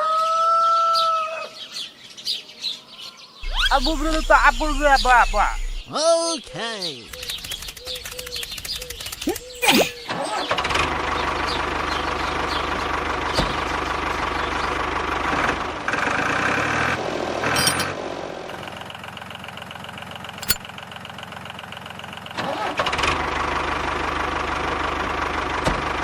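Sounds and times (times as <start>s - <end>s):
motor running: 3.4s - 5.9s
sharp click: 7.1s - 9.5s, 20.4s - 20.6s.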